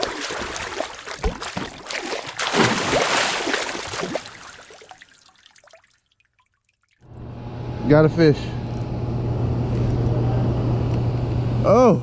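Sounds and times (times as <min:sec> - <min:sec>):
water splashing and sloshing: 0:00.0 - 0:07.1.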